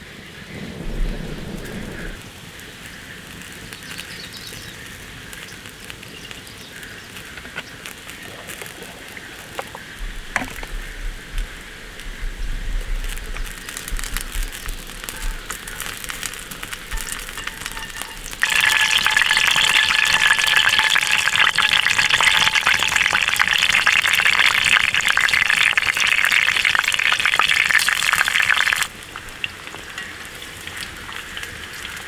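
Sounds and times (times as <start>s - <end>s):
rain falling on a tent: 0.0s - 32.0s
low rumbling: 0.4s - 2.2s.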